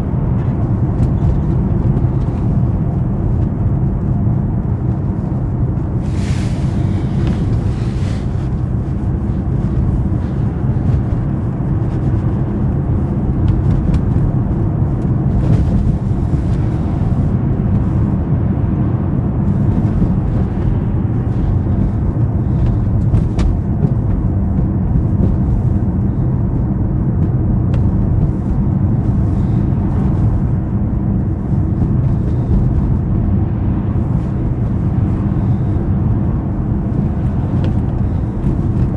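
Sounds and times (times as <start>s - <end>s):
car engine and road noise: 0.0s - 38.9s
brief high hissing: 6.1s - 6.9s.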